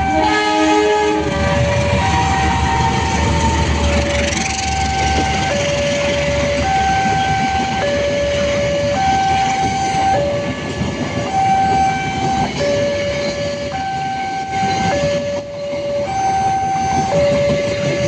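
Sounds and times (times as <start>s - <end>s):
level-crossing warning siren: 0.0s - 18.0s
train rumbling: 0.0s - 18.0s.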